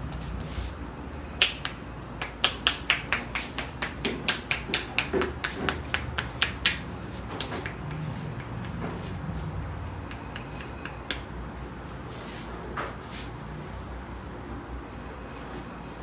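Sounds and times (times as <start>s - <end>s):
rapid sharp hand clicks: 1.4s - 11.4s.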